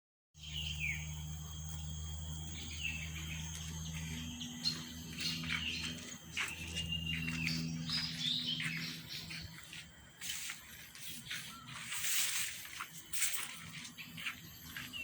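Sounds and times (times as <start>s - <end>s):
high insect trill: 0.4s - 15.0s
low hum: 0.4s - 15.0s
small birds chirping: 0.4s - 15.0s.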